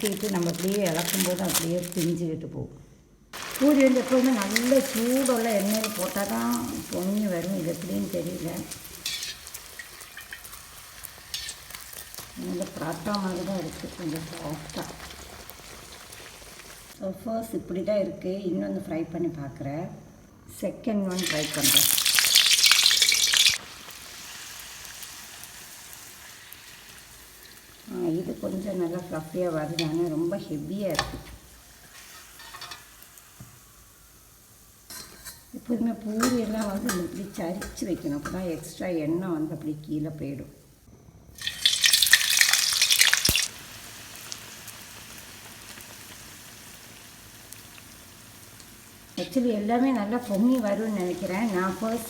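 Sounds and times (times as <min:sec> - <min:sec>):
hot oil sizzling: 0:00.0 - 0:02.0, 0:03.3 - 0:17.0, 0:21.1 - 0:52.0.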